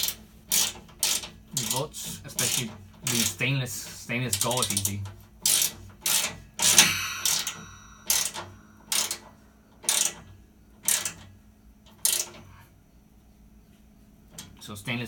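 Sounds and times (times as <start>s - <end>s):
ratchet wrench clicking: 6.8s - 9.2s.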